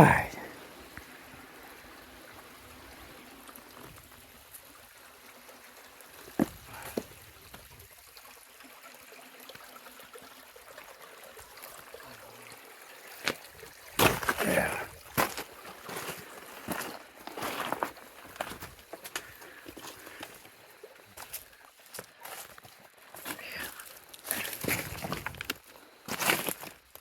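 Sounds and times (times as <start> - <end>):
stream water running: 0.0 - 27.0.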